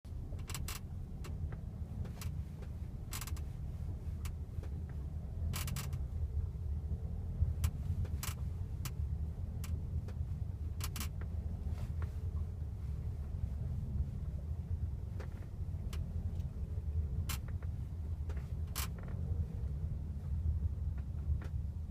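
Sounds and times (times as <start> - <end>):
moving car rumble: 0.0 - 21.9
car suspension squeaking: 0.2 - 6.2, 7.5 - 14.0, 17.2 - 19.4.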